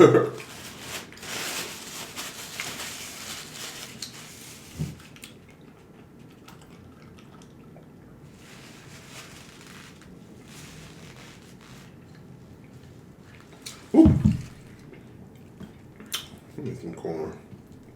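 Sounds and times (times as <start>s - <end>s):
wet squishing and chewing: 5.0s - 8.3s, 11.9s - 16.6s
low thump: 14.0s - 14.6s.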